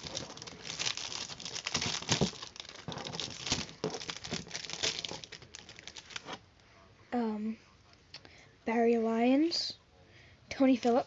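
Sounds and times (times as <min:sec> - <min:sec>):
plastic wrapper crinkling: 0:00.0 - 0:06.4.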